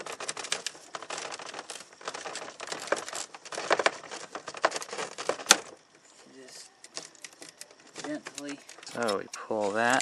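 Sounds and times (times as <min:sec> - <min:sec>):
plastic snapping: 0:00.0 - 0:05.8
plastic trim crackling and creaking: 0:00.0 - 0:10.0.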